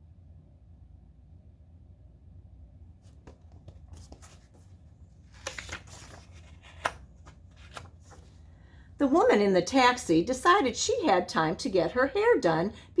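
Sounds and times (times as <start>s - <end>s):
paper page rustling and turning: 3.0s - 8.5s.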